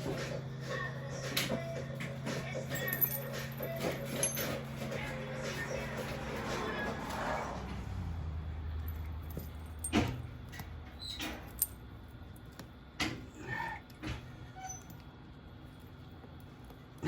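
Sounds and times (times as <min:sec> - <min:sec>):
tire chains clinking: 0:02.7 - 0:05.1, 0:08.6 - 0:11.9.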